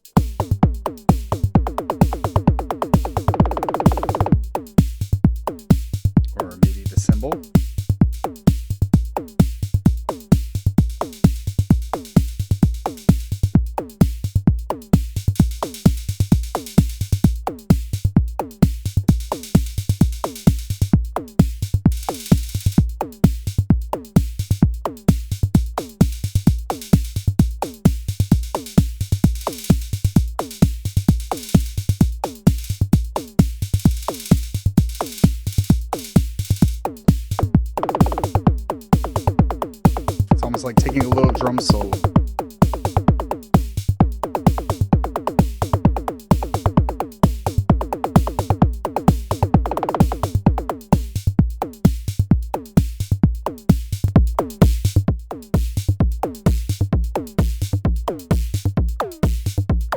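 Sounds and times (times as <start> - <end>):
drum machine kick: 0.0 - 59.9
fast drum hits dropping in pitch: 0.2 - 5.0, 33.8 - 51.2.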